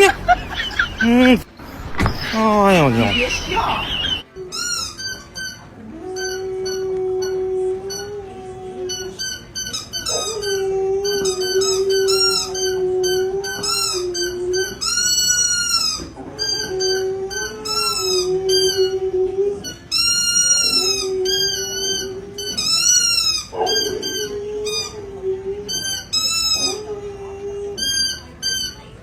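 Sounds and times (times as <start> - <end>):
dog howling: 5.8 - 28.6.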